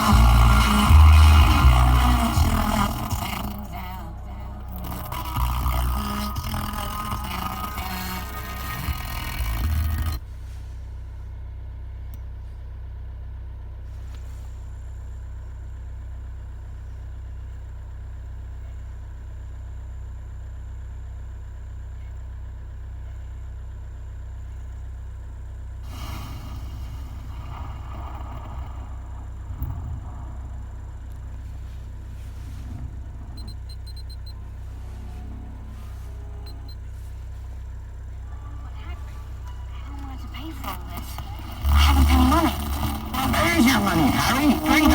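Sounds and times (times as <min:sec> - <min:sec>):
faint rustles: 0:00.0 - 0:11.4, 0:25.8 - 0:44.9
low rumble inside a car: 0:00.0 - 0:44.9.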